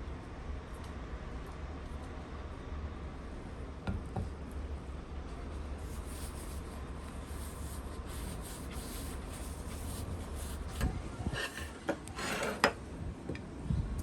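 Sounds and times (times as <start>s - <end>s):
steady low hum: 0.0s - 12.0s
scraping and rubbing: 5.8s - 12.6s.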